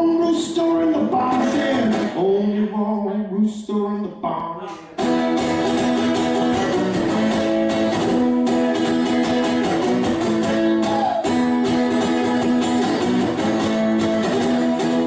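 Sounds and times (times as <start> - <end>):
guitars strumming chords: 0.0 - 15.0
bass line: 5.0 - 15.0.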